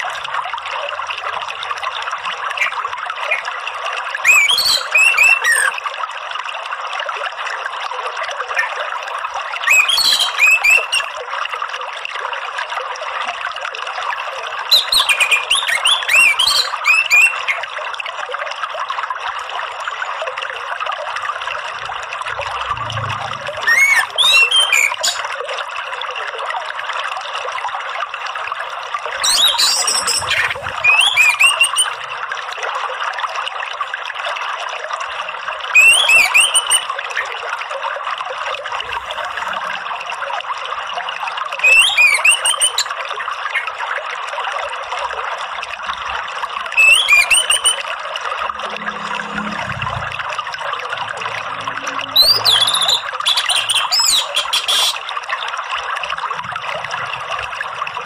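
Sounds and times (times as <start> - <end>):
running water: 0.0 - 58.0
thrush singing: 48.4 - 54.9.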